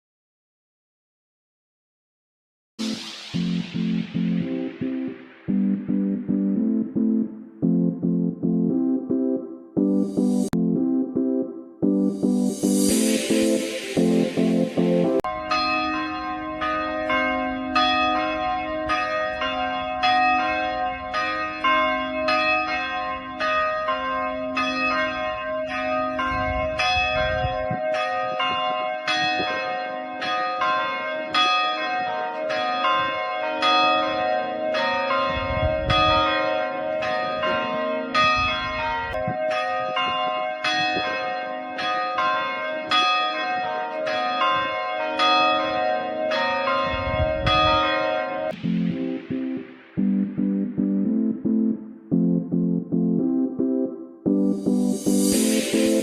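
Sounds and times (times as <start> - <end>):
tower bells ringing: 12.4 - 51.6, 54.6 - 56.0.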